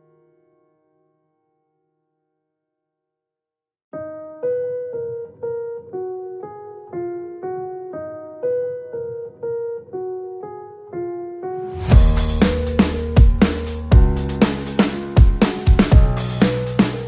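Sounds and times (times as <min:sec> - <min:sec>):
solo keyboard melody: 0:03.9 - 0:17.0.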